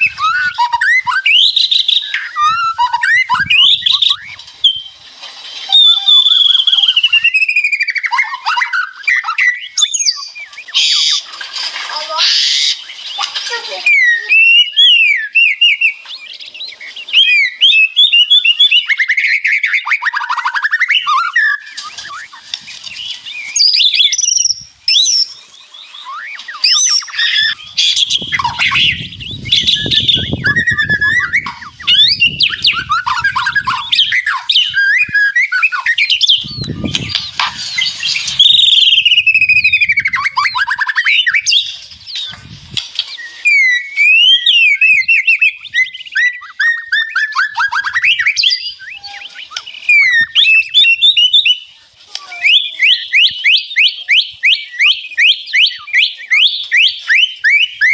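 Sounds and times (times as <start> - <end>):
songbird singing whistles: 0.0 - 11.4, 12.2 - 42.4, 43.0 - 57.9.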